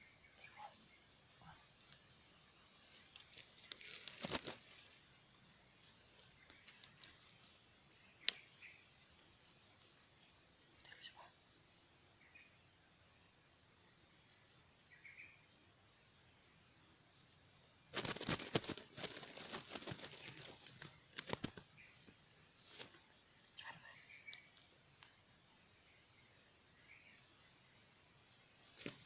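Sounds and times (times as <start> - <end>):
insects chirring: 0.0 - 29.0
brief rustle: 2.9 - 4.9.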